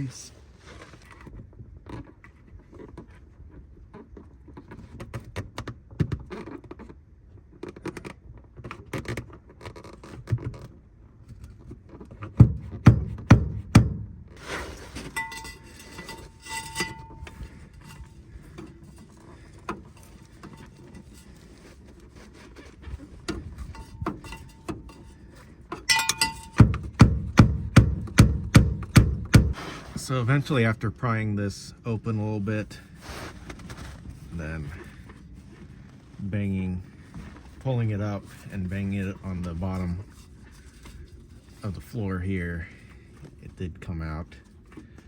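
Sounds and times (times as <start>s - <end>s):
heavy knocks: 12.4s - 14.2s, 25.9s - 29.6s
metal lever clunking and rattling: 25.8s - 29.6s
brief metallic ring: 25.9s - 26.6s.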